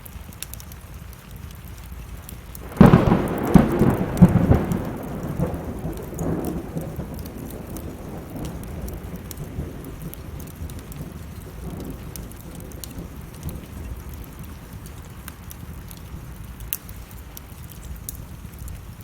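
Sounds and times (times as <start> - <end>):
steady rain: 0.0 - 19.0
wood fire crackling: 0.0 - 19.0
thunder: 2.6 - 14.9.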